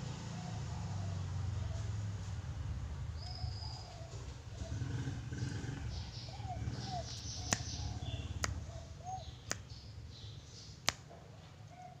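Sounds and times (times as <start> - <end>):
dove cooing: 3.2 - 9.4.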